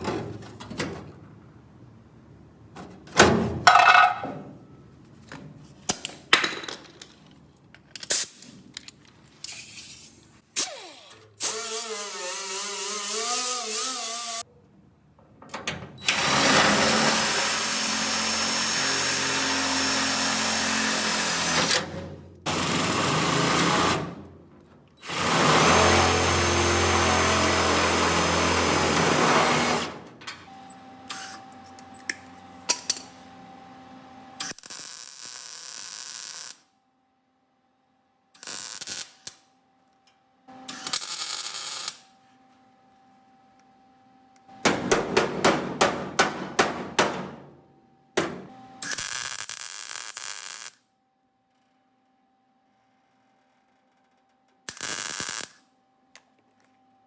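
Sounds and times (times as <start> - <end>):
clicks and knocks of handling parts: 5.0 - 9.6
power tool on metal: 10.6 - 14.4.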